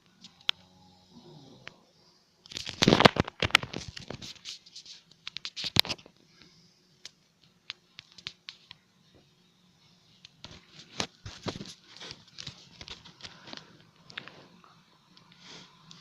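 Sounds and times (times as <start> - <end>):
scratching and rustling: 2.5 - 6.2, 10.2 - 14.6.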